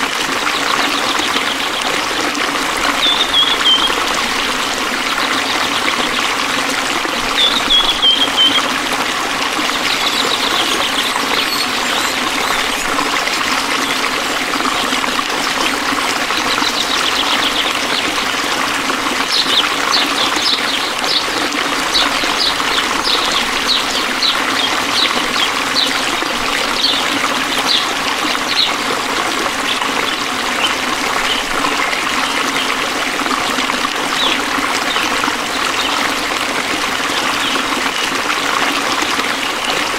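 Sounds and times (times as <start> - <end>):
small stream trickling: 0.0 - 39.9
high chirping animal calls: 3.0 - 4.1, 7.4 - 8.7, 9.7 - 14.1.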